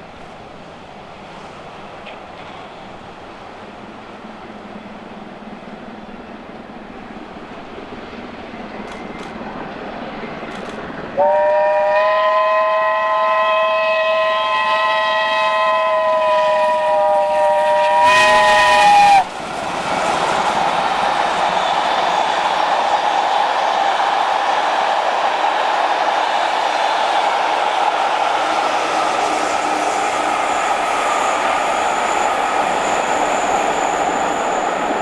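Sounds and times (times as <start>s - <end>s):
steam train passing: 0.0s - 35.0s
locomotive whistle: 11.2s - 19.3s, 28.5s - 35.0s.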